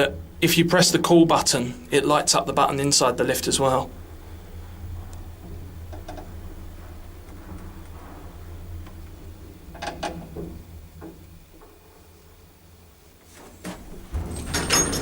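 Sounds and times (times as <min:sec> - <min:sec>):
lift running with low hum: 0:00.0 - 0:15.0.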